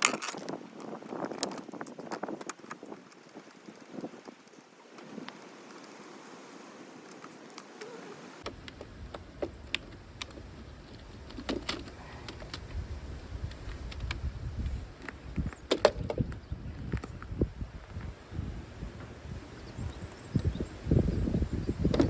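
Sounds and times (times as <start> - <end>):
wind rumble on microphone: 8.4 - 22.0.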